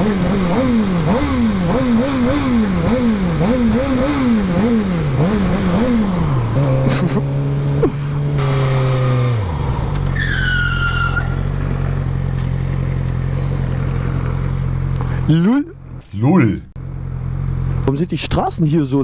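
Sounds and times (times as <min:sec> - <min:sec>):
motorcycle engine revving: 0:00.0 - 0:16.1, 0:16.8 - 0:18.6
tyre squeal: 0:09.8 - 0:11.7.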